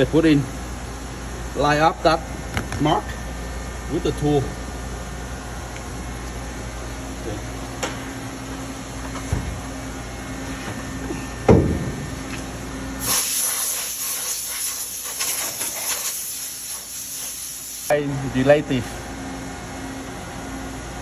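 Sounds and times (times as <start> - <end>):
steady hiss: 13.0 - 18.0.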